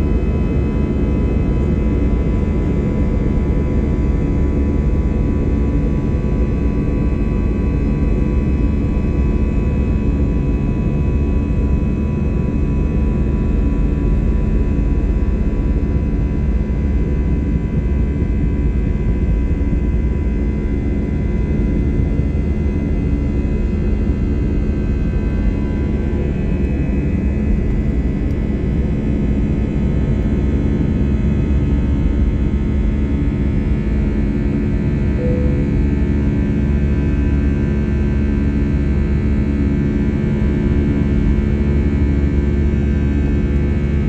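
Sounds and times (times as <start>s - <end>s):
jet engine rumble in cabin: 0.0s - 44.0s.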